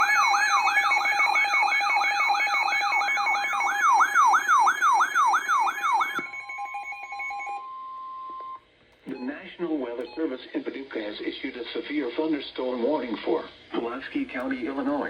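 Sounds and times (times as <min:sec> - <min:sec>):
electronic siren yelping: 0:00.0 - 0:07.7.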